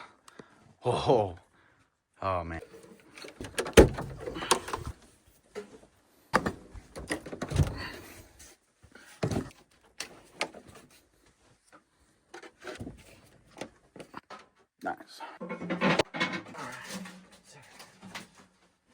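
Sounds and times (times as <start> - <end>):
objects knocking and clunking: 2.6 - 8.2, 9.0 - 11.0, 11.7 - 14.8, 15.4 - 18.9
scraping and rattling: 15.4 - 18.8.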